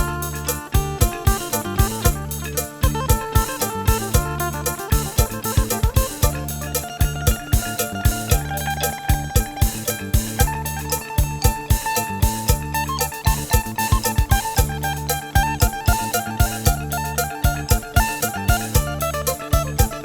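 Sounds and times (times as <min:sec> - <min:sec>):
held melodic notes: 0:00.0 - 0:20.0
quick drum beat: 0:00.0 - 0:20.0.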